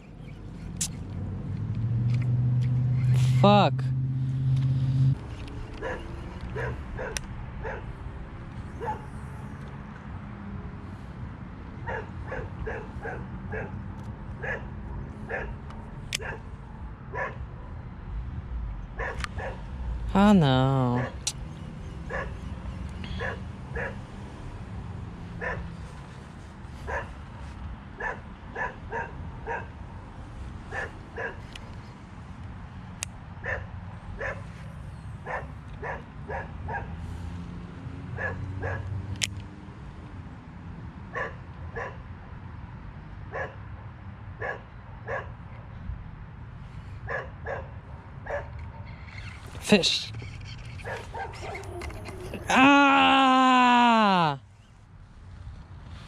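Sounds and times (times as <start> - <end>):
dog barking: 5.8 - 7.9, 8.7 - 9.2, 11.8 - 13.8, 14.4 - 15.6, 16.2 - 16.5, 17.1 - 17.5, 19.0 - 19.7, 21.0 - 21.2, 22.0 - 22.5, 23.1 - 24.1, 25.4 - 25.7, 26.9 - 27.2, 28.0 - 29.8, 30.7 - 31.4, 33.4 - 34.5, 35.2 - 37.0, 38.2 - 38.9, 41.1 - 42.0, 43.3 - 43.6, 44.4 - 45.4, 47.0 - 48.5, 50.8 - 52.6.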